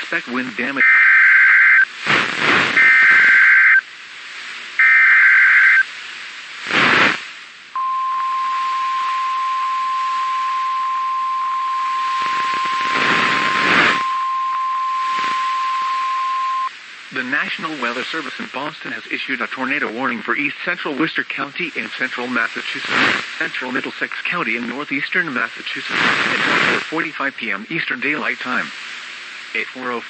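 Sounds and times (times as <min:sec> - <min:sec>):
static crackle: 0:00.0 - 0:30.0
warbling data tones: 0:07.8 - 0:16.7.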